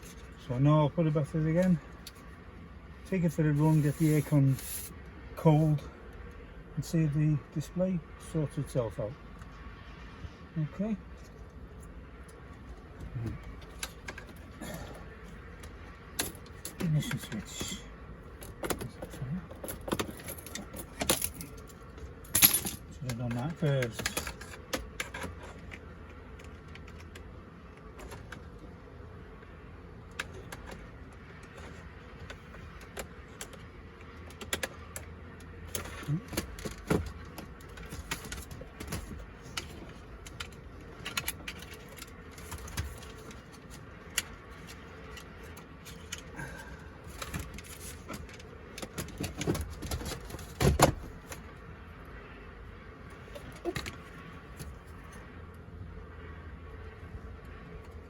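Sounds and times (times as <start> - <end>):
plastic car parts clicking and knocking: 30.1 - 46.3, 47.1 - 51.5.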